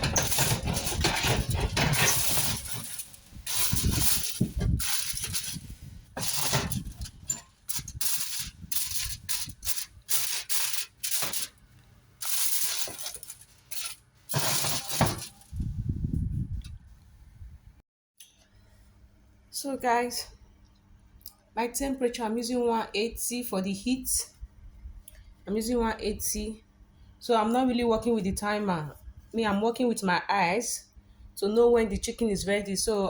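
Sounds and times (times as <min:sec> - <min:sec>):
kitchen clatter: 0:00.0 - 0:11.6, 0:12.2 - 0:15.5
rustling handling noise: 0:00.0 - 0:15.8.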